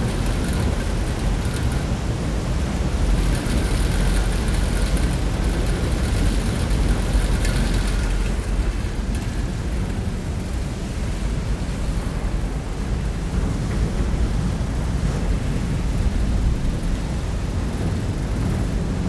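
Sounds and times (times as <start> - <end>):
metal fittings rattling: 0.0 - 10.5
ferry low rumble: 0.0 - 19.0.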